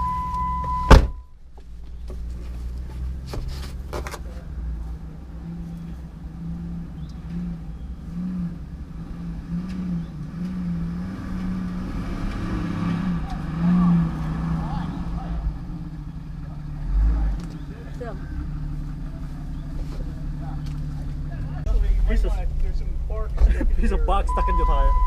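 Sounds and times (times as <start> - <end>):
vehicle door slamming: 0.0 - 1.2
vehicle engine running: 0.0 - 25.0.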